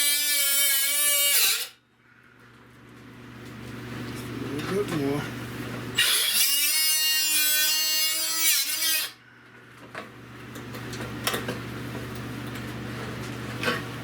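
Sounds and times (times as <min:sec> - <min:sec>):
power cutter slicing sheet steel: 0:00.0 - 0:01.8, 0:06.0 - 0:09.2.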